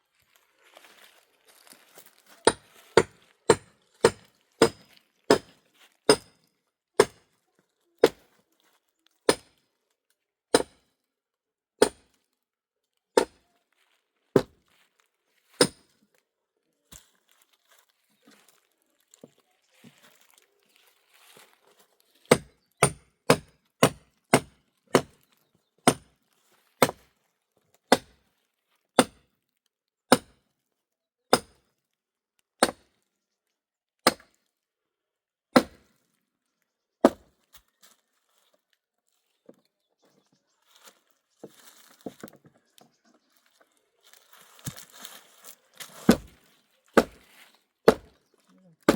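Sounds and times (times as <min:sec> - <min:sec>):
axe chopping firewood: 0:02.4 - 0:07.3, 0:08.0 - 0:08.3, 0:09.2 - 0:09.6, 0:10.5 - 0:10.9, 0:11.8 - 0:12.2, 0:13.2 - 0:13.5, 0:14.4 - 0:14.6, 0:15.6 - 0:16.0, 0:22.3 - 0:25.2, 0:25.8 - 0:26.2, 0:26.8 - 0:27.2, 0:27.9 - 0:28.2, 0:29.0 - 0:29.3, 0:30.1 - 0:30.4, 0:31.3 - 0:31.7, 0:32.6 - 0:32.9, 0:34.0 - 0:34.4, 0:35.5 - 0:36.0, 0:37.0 - 0:37.6, 0:44.5 - 0:48.2.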